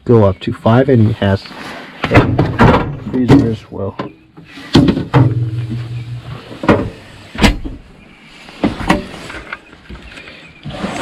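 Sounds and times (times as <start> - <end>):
small doors knocking shut: 2.0 - 4.2.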